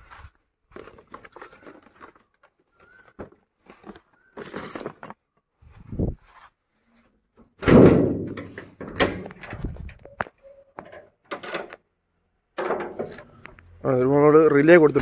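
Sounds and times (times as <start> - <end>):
heavy slam: 7.6 - 8.4.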